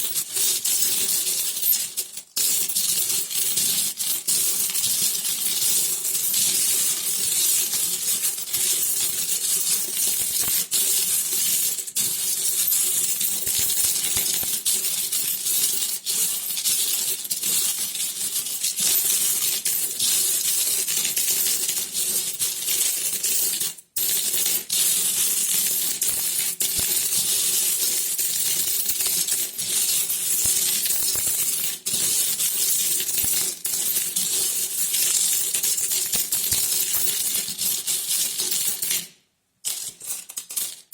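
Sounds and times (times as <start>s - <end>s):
metal coins clinking: 8.3s - 11.1s, 12.4s - 15.1s, 25.2s - 39.0s, 39.7s - 40.9s.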